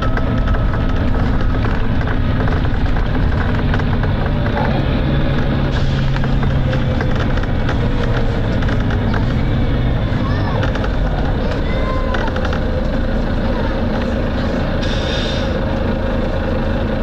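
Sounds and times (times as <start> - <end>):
rattling clicks: 0.0 - 9.7, 10.5 - 13.0
bus diesel engine under load: 0.0 - 17.0
road noise: 0.0 - 17.0.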